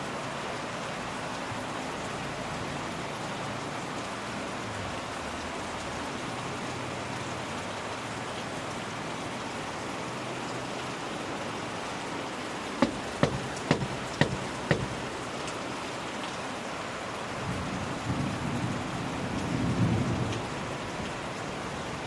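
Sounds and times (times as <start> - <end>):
rain falling: 0.0 - 22.0
sharp knocks: 12.8 - 15.2.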